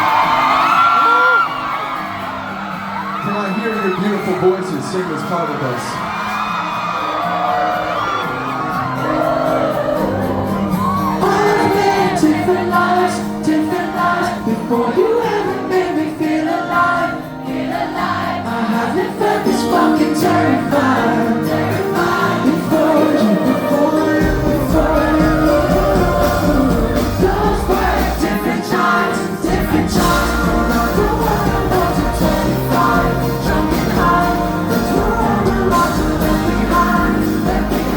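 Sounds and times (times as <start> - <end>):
audience whooping and shouting: 0.0 - 12.4
live pop band playing: 0.0 - 37.9
person singing: 9.0 - 17.3, 18.5 - 37.9.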